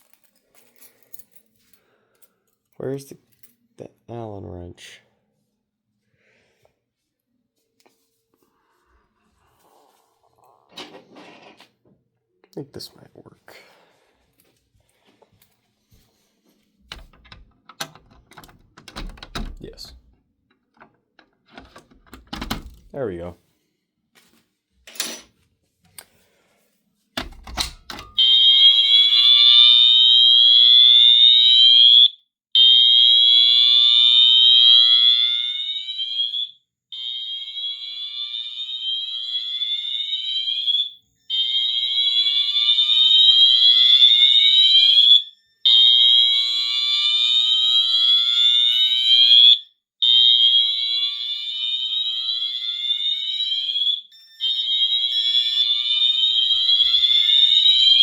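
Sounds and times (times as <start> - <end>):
fire alarm horn whooping: 28.1 - 58.0.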